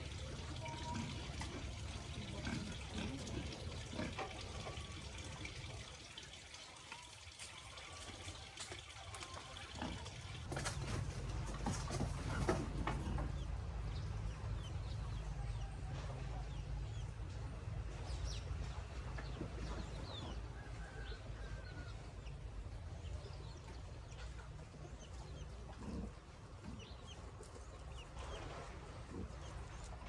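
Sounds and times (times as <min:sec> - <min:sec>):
chickens clucking: 0:00.0 - 0:05.9, 0:06.5 - 0:17.1, 0:19.0 - 0:30.0.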